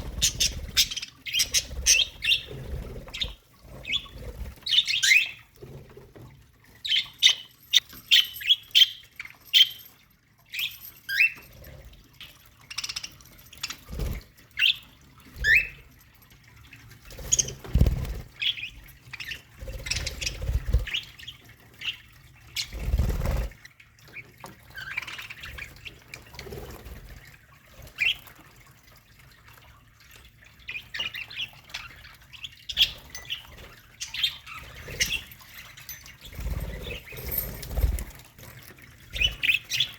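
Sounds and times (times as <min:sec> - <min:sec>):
budgerigars chirping and squawking: 0:00.0 - 0:05.4, 0:06.8 - 0:09.9, 0:17.2 - 0:23.6, 0:30.6 - 0:38.0, 0:39.1 - 0:39.9.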